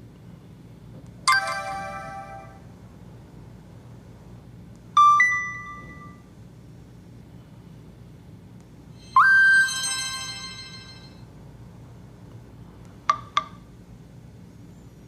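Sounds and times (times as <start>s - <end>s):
rising shimmering alert tone: 1.3s - 2.7s, 9.0s - 11.2s.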